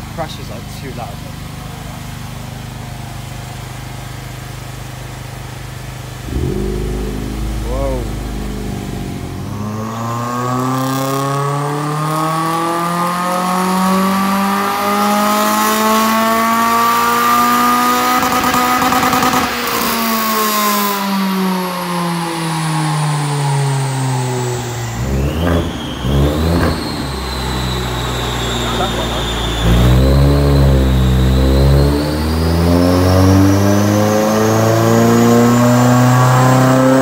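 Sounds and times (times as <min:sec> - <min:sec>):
car engine revving: 0:06.2 - 0:20.0.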